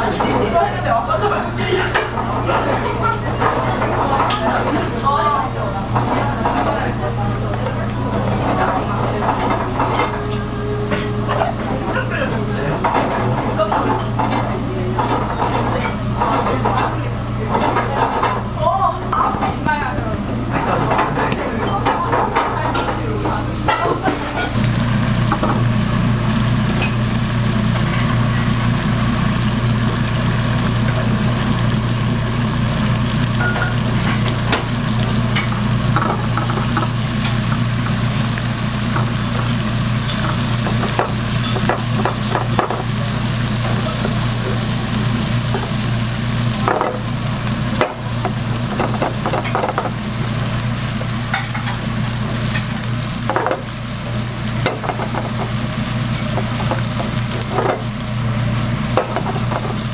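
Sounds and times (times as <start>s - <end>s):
food sizzling in a pan: 0.0s - 59.9s
utensils tapping on a pan: 1.9s - 4.9s, 5.9s - 18.5s, 19.1s - 24.6s, 33.3s - 46.0s, 46.6s - 50.1s, 50.9s - 53.8s, 54.6s - 57.9s, 58.9s - 59.9s.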